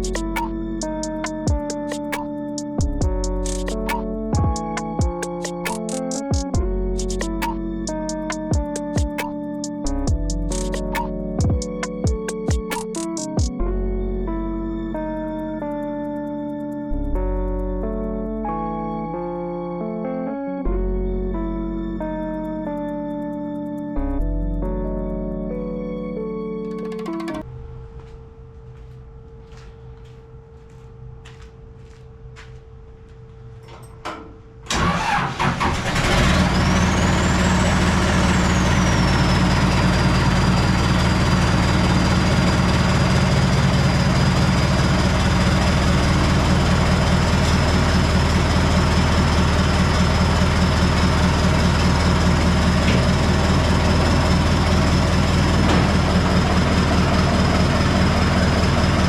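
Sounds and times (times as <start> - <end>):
high engine whine: 34.6 - 59.0
diesel engine idling: 34.7 - 59.0.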